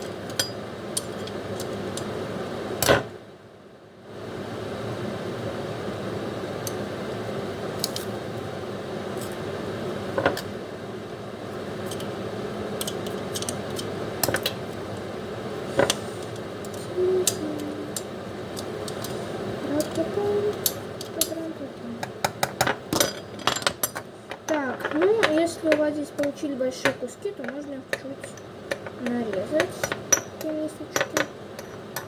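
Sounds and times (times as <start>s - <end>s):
utensils tapping a bowl: 22.0s - 32.0s.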